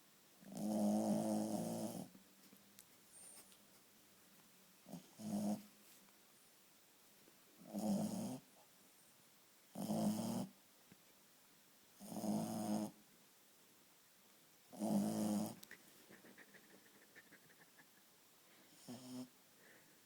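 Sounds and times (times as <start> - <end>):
dog snoring: 0.5 - 2.1, 4.9 - 5.6, 7.6 - 8.4, 9.7 - 10.5, 12.0 - 13.0, 14.7 - 17.6, 18.7 - 19.3.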